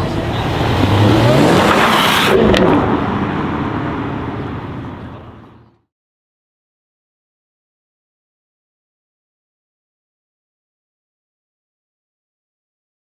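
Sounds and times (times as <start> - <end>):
car engine accelerating hard: 0.0 - 5.8.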